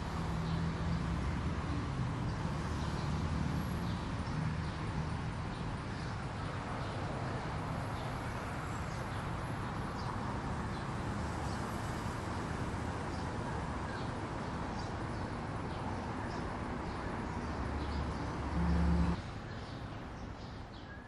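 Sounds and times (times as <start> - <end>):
city road traffic rumble: 0.0 - 20.8
birds chirping: 14.8 - 20.0.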